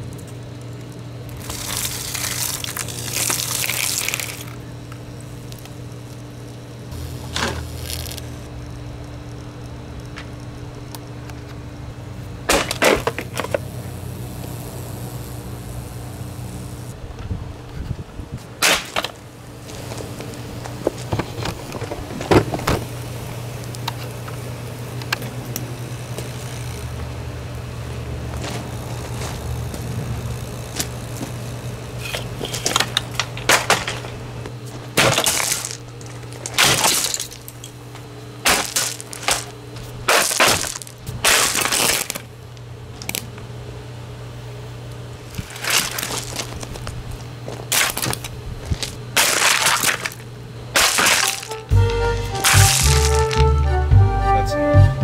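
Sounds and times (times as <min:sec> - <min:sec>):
steady low hum: 0:00.0 - 0:55.0
heater being smashed: 0:12.4 - 0:13.6, 0:18.6 - 0:19.2, 0:32.5 - 0:34.2, 0:34.9 - 0:37.6, 0:38.4 - 0:42.3, 0:47.7 - 0:50.2, 0:50.8 - 0:53.4.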